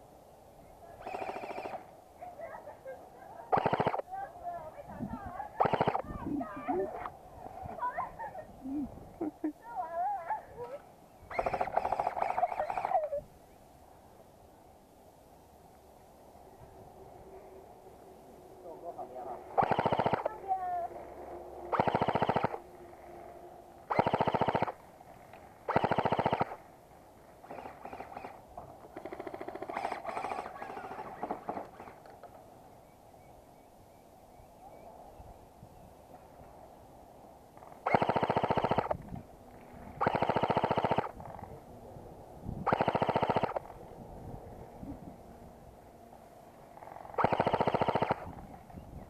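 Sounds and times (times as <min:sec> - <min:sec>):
airsoft gun full-auto bursts: 0:01.0 - 0:01.9, 0:03.5 - 0:04.0, 0:05.6 - 0:06.1, 0:11.3 - 0:13.0, 0:19.5 - 0:20.3, 0:21.7 - 0:22.6, 0:23.9 - 0:24.8, 0:25.6 - 0:26.6, 0:27.4 - 0:28.4, 0:29.0 - 0:32.0, 0:37.8 - 0:39.0, 0:40.0 - 0:41.2, 0:42.6 - 0:43.7, 0:47.0 - 0:48.4.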